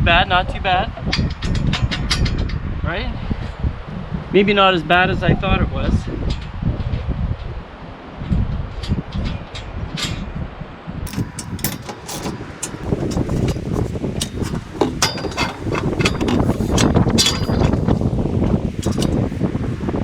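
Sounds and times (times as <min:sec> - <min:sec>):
wind buffeting microphone: 0:00.0 - 0:20.0
metal parts clinking and knocking: 0:11.1 - 0:19.4.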